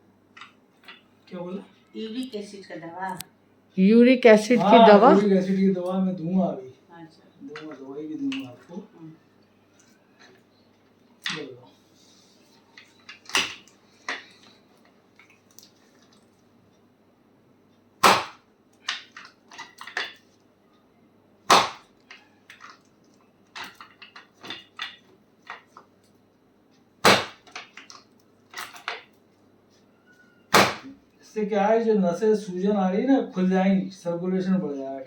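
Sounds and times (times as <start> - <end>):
person speaking: 3.8 - 6.4
sharp smacks on skin: 18.0 - 18.4, 21.5 - 21.8, 30.5 - 30.9.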